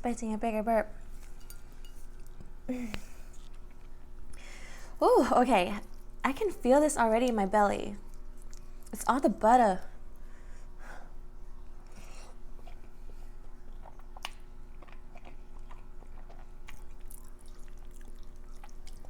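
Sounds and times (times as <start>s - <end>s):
person chewing food: 1.2s - 4.5s, 8.0s - 8.9s, 11.7s - 19.0s.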